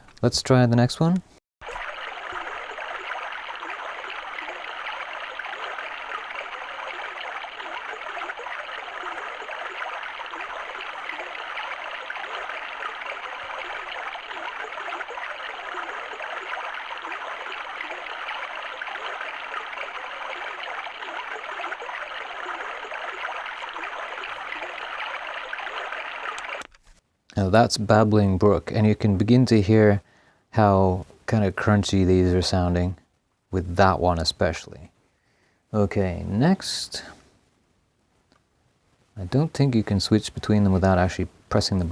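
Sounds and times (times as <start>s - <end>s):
stream sound from small speaker: 1.6s - 26.7s, 35.8s - 37.2s, 39.2s - 41.9s.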